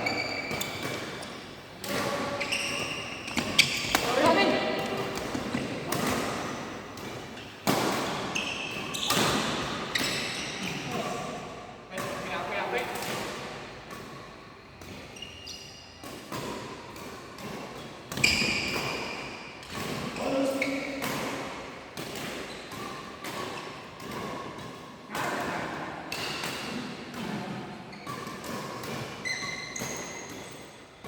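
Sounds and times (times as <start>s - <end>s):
racket hitting shuttlecock: 0.1s - 11.0s, 16.0s - 20.2s, 20.8s - 30.5s.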